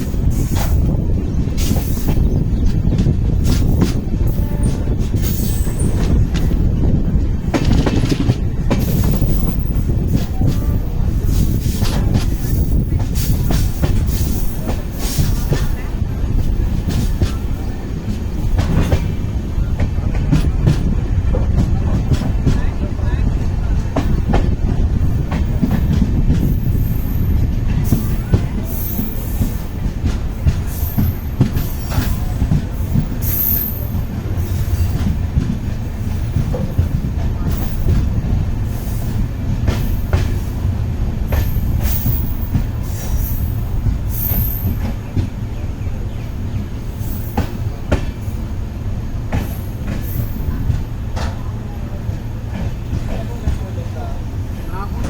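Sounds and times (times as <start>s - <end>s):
train rumbling on rails: 0.0s - 55.0s
wheel clicks over rail joints: 7.5s - 9.4s.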